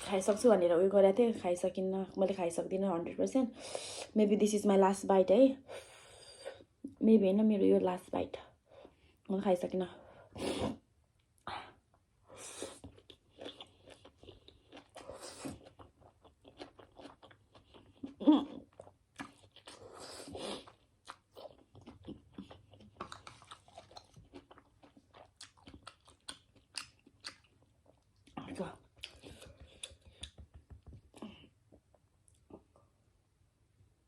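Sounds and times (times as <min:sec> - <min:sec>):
person chewing noodles: 0:12.3 - 0:30.4
wet mouth clicks and smacks: 0:29.0 - 0:31.0.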